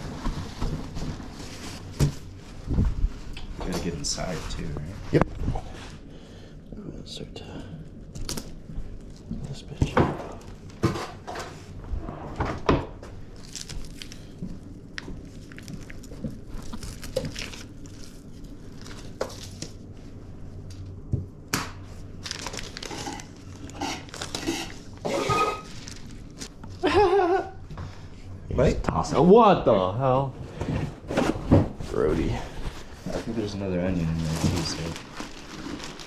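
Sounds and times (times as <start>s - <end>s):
hands rustling and crinkling: 13.2s - 20.9s, 21.8s - 25.0s, 25.6s - 26.8s, 31.7s - 36.0s.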